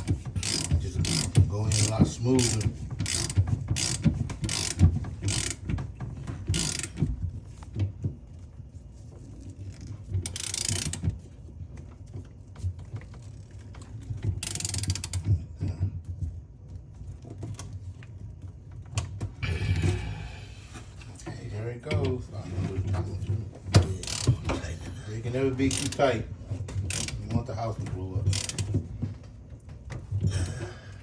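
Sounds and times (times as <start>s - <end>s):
ratchet wrench clicking: 0.0s - 5.7s, 6.5s - 7.1s, 9.8s - 11.0s, 14.4s - 15.2s, 24.0s - 24.3s, 25.6s - 26.2s, 26.8s - 27.2s, 28.2s - 28.7s.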